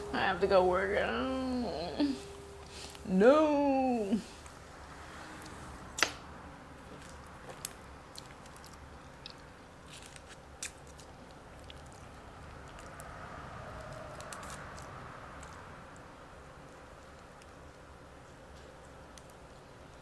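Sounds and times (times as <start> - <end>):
person chewing with wet mouth sounds: 6.8 - 15.6.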